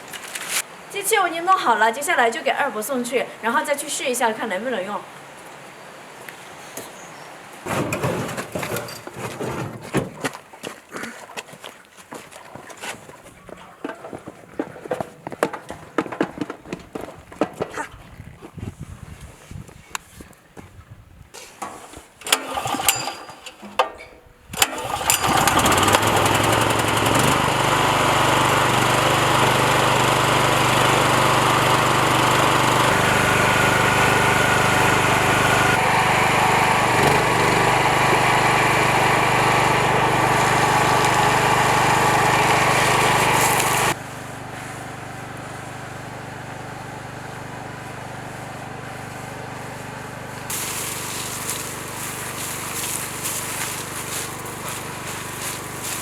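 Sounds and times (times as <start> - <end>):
generator engine running: 22.3 - 23.3, 24.6 - 56.0.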